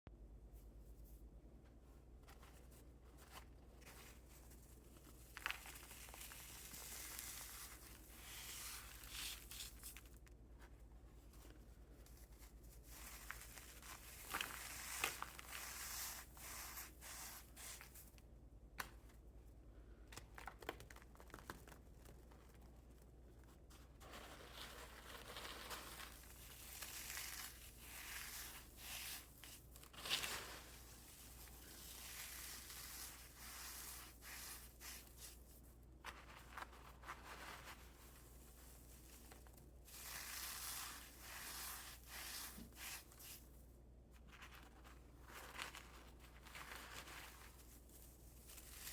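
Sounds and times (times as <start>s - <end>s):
cornstarch crunching and crackling: 4.4s - 10.3s, 12.2s - 18.1s, 24.0s - 43.5s, 44.2s - 48.9s.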